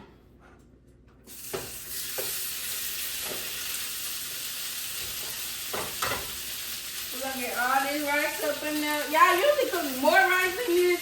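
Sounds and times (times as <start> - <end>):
rice sizzling in hot oil: 1.3 - 11.0.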